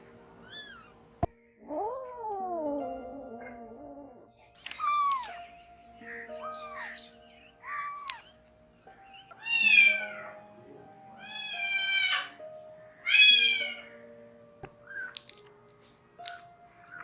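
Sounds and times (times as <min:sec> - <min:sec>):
cat meowing: 0:00.4 - 0:01.1, 0:04.6 - 0:08.4, 0:09.1 - 0:12.4, 0:13.0 - 0:14.0, 0:14.8 - 0:15.3.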